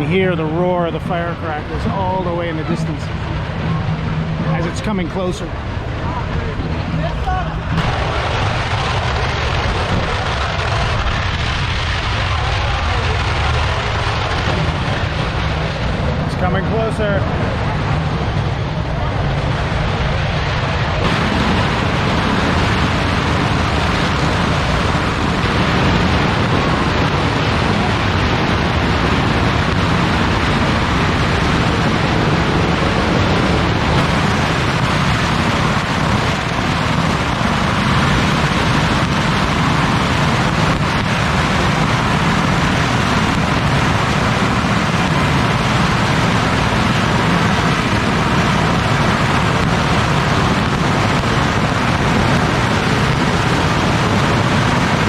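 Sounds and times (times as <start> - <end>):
firecrackers popping rapidly: 7.7 - 17.0, 21.0 - 55.0.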